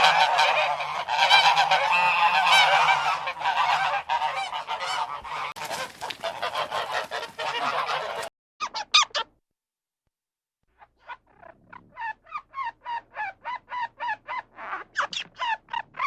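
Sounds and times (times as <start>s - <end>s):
geese honking: 0.0s - 8.3s.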